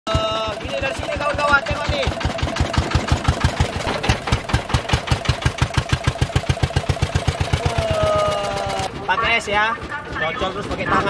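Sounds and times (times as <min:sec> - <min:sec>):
small engine thudding rapidly: 0:00.1 - 0:11.0.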